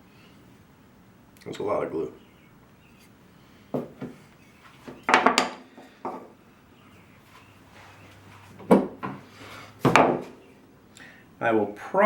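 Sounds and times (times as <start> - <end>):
wooden pieces knocking together: 4.8 - 6.4, 9.8 - 10.4.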